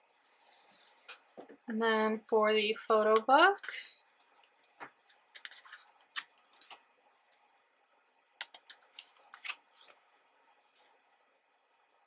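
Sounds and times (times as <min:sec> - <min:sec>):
photo book rustling: 0:04.2 - 0:06.9, 0:08.6 - 0:11.0.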